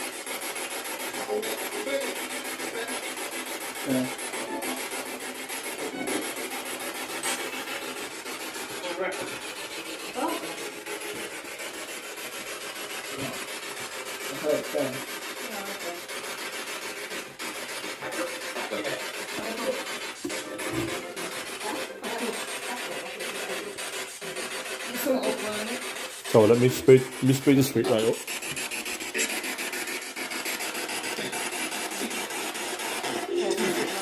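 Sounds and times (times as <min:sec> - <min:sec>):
radio static hiss: 0:29.1 - 0:30.0.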